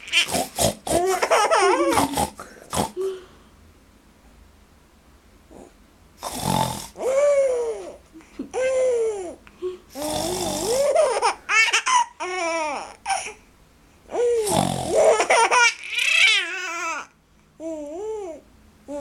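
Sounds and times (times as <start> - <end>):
person fake snoring: 0.1 - 1.2, 1.8 - 3.2, 6.2 - 7.4, 9.9 - 11.0, 14.3 - 15.1
little girl laughing: 0.9 - 3.2, 7.0 - 9.4, 10.7 - 13.3, 14.4 - 16.5.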